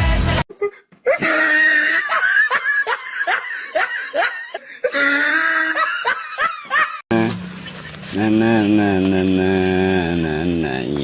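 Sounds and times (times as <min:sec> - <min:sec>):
high-pitched laughter: 0:00.5 - 0:08.6.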